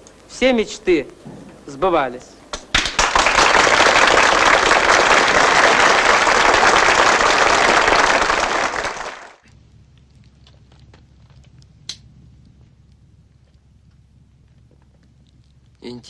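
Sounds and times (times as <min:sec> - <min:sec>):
faint low hum: 0:00.0 - 0:16.0
audience applauding: 0:02.5 - 0:09.4.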